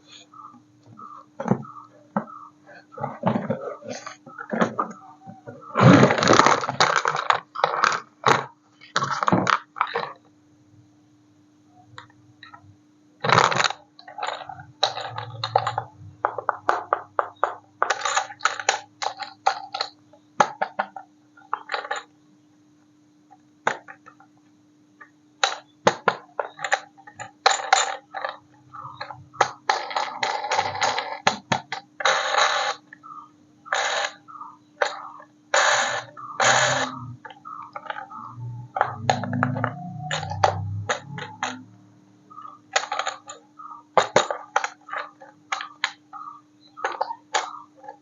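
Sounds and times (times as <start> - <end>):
faint steady hum: 0.0 - 48.0
packaging and toy parts handled: 5.8 - 10.1.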